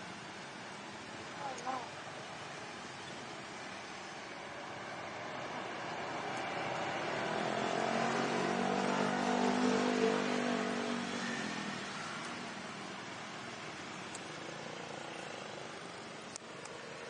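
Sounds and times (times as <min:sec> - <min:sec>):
motor vehicle passing: 0:05.1 - 0:13.0.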